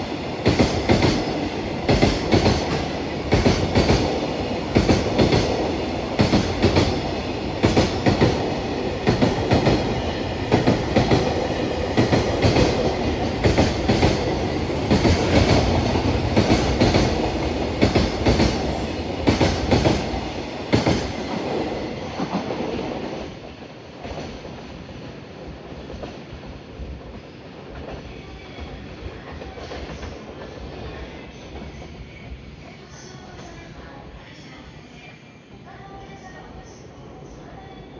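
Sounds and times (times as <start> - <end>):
train rumble: 0.0 - 32.0
train wheels clattering over rail joints: 9.0 - 21.6.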